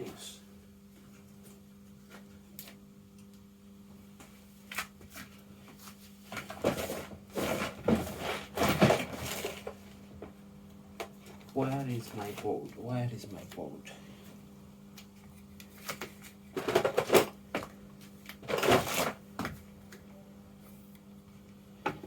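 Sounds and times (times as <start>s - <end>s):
faint steady hum: 0.0s - 22.0s
objects rummaged on workbench: 6.3s - 9.8s, 16.5s - 17.7s, 18.4s - 19.2s.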